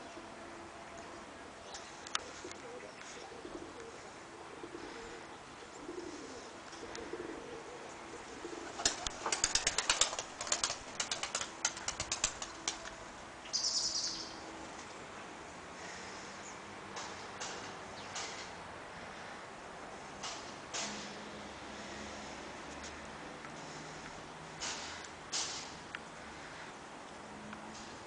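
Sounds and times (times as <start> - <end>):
pigeon cooing: 2.2 - 10.0
pigeon wings clapping: 8.7 - 13.0.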